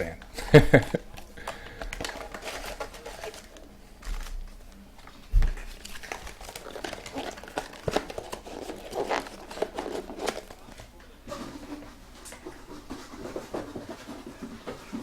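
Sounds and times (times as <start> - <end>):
cards rustling: 0.0 - 11.0
foil wrappers crinkling and tearing: 0.0 - 11.0.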